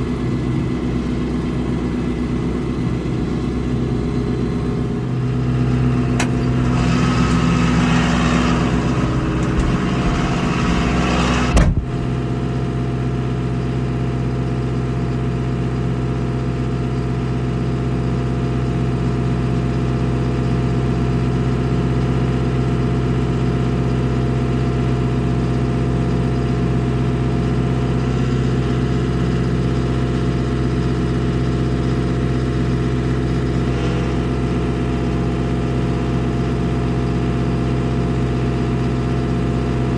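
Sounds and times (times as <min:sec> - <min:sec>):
vehicle engine running: 0:00.0 - 0:39.9
short thump: 0:06.1 - 0:12.2.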